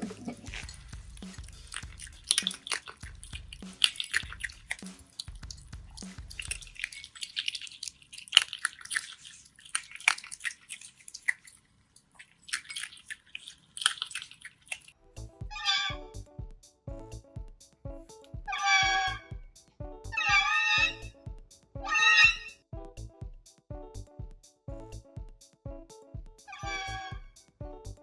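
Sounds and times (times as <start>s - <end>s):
otter chewing with wet smacking: 0.0s - 15.0s.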